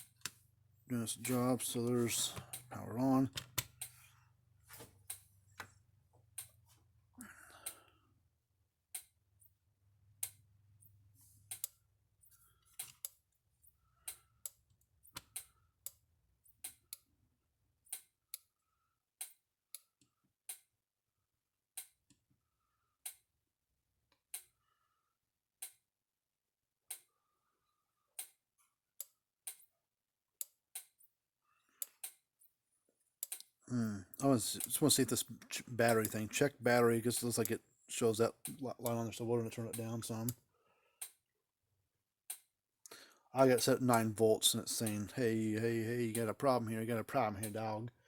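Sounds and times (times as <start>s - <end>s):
electric fence charger ticking: 0.0s - 4.1s, 5.0s - 6.6s, 33.2s - 40.4s, 43.4s - 47.8s.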